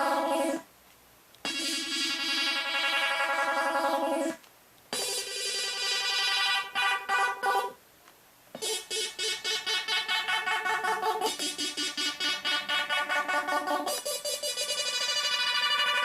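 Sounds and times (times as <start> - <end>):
rapid electronic beeping: 1.5 - 3.7, 5.0 - 7.6, 8.6 - 16.0
synthesizer electronic tones: 1.5 - 7.8, 8.6 - 16.0.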